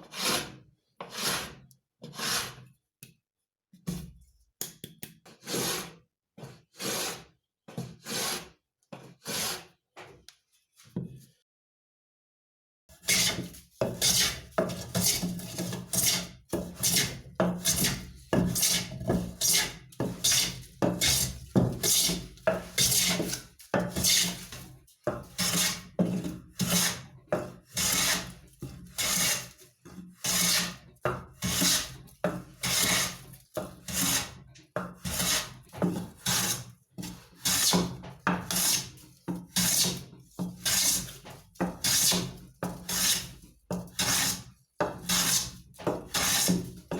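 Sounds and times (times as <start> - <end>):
wood being rasped or sawn: 0.0 - 2.6, 5.4 - 6.0, 6.7 - 7.3, 8.0 - 8.6, 9.2 - 9.7, 13.0 - 27.1, 27.7 - 29.6, 30.2 - 34.4, 35.0 - 40.0, 40.6 - 46.9.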